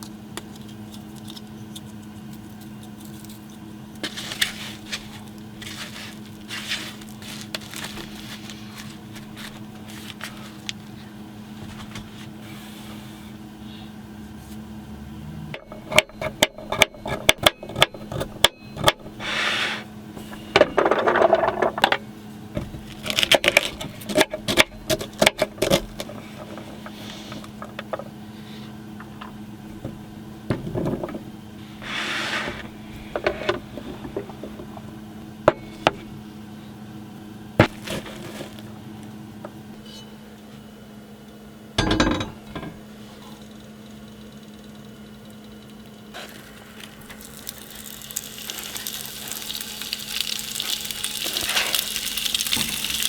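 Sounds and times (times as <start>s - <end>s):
steady low hum: 0.0s - 52.4s
rustling and scraping: 0.5s - 13.3s, 22.6s - 29.4s, 30.6s - 36.2s, 37.6s - 38.8s.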